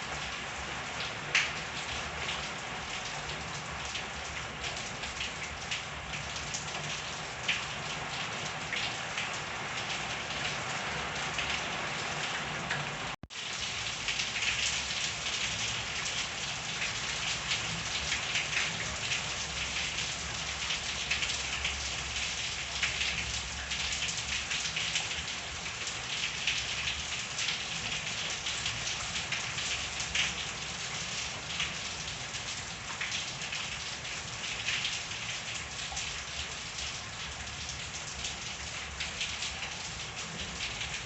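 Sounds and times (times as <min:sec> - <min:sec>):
steady rain falling: 0:00.0 - 0:41.0.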